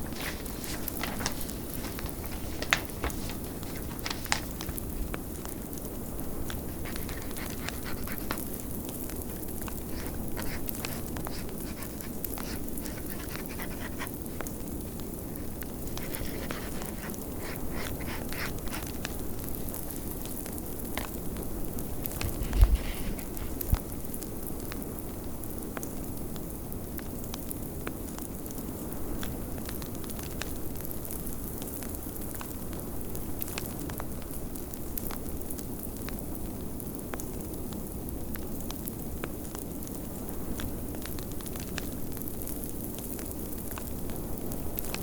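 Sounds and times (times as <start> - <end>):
wood fire crackling and popping: 0.0 - 13.1.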